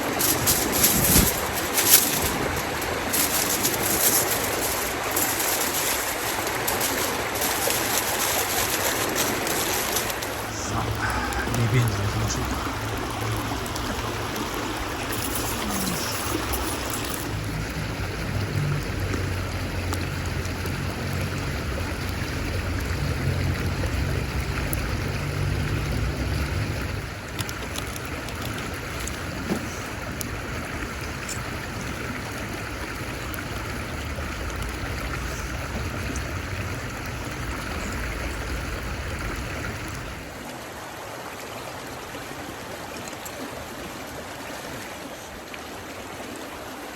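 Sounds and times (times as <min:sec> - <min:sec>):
steady rushing noise: 0:00.0 - 0:18.2.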